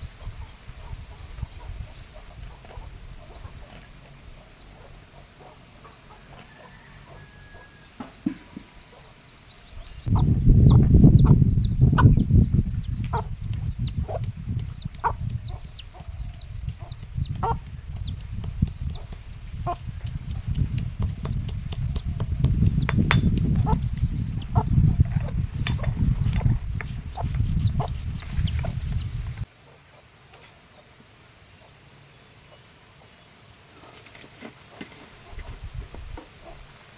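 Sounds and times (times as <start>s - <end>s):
chicks peeping: 0.0s - 29.5s
chickens clucking: 0.0s - 31.0s
sharp clicks: 12.7s - 29.1s.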